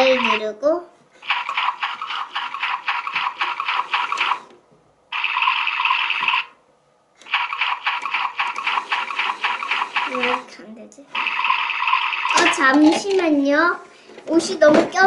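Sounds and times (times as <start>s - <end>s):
toy washing machine sloshing water: 1.2s - 4.5s, 5.2s - 6.5s, 7.3s - 10.5s, 11.2s - 13.3s.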